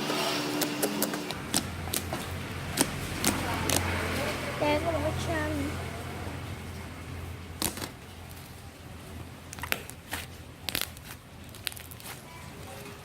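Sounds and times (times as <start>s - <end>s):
slime clicking pops: 9.6s - 12.0s.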